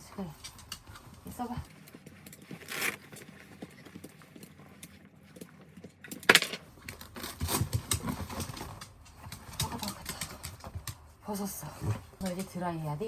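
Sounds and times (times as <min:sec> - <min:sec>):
raincoat rustling and clicks: 0:00.6 - 0:05.0.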